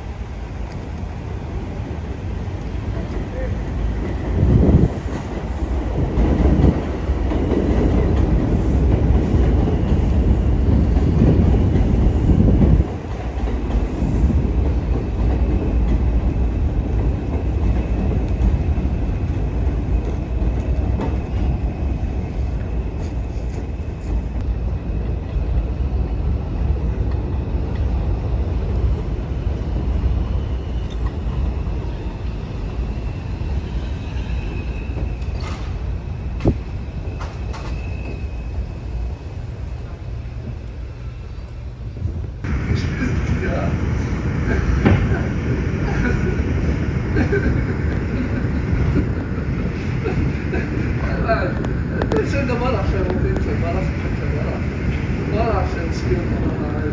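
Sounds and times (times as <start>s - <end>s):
subway train rumbling on rails: 0.0s - 56.9s.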